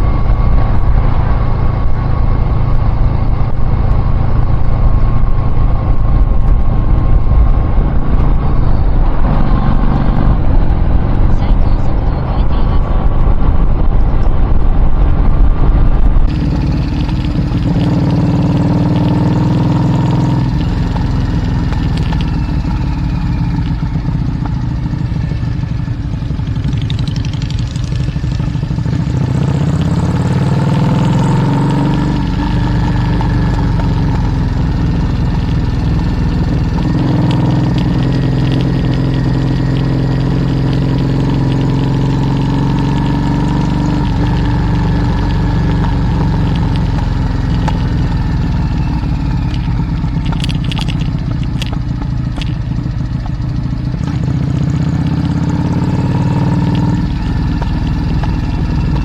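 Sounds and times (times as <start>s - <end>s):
wind noise on microphone: 0.0s - 19.4s
vehicle engine running: 0.0s - 59.0s.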